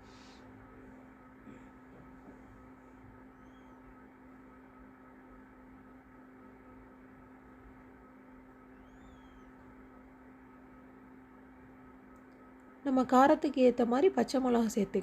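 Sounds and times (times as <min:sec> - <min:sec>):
faint hum and hiss: 0:00.0 - 0:15.0
faint short high chirps: 0:08.7 - 0:09.5.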